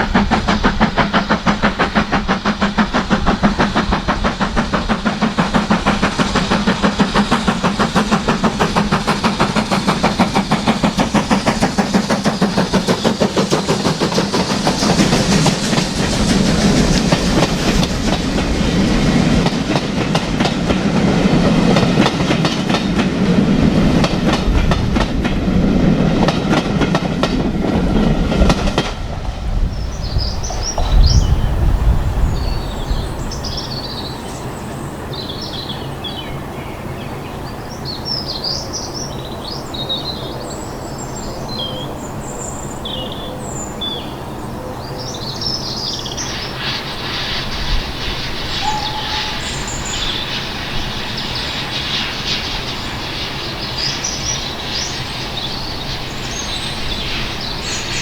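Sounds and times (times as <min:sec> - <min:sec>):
rushing hiss: 0:00.0 - 0:36.6, 0:45.2 - 0:58.0
passing train: 0:00.0 - 0:58.0
small birds chirping: 0:29.7 - 0:46.8.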